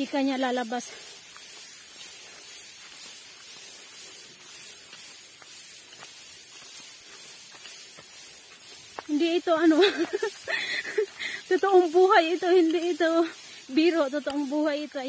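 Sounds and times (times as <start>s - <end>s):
high-pitched outdoor hiss: 0.0s - 15.0s
faint soft ticks: 12.3s - 14.8s.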